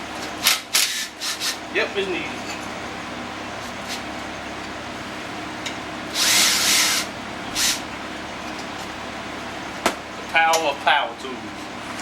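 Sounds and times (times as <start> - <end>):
fan humming: 0.0 - 12.0
power tool burst: 6.1 - 7.8.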